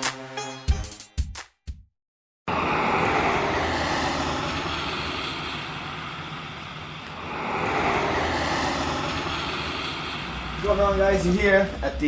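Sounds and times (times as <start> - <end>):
vehicle rumble with road hiss: 2.5 - 12.0.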